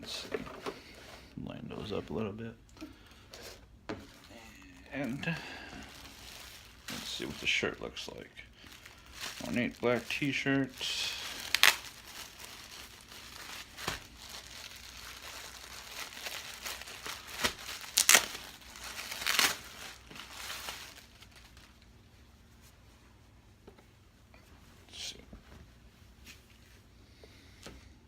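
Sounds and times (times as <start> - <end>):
packaging crinkling and rustling: 3.4 - 21.9.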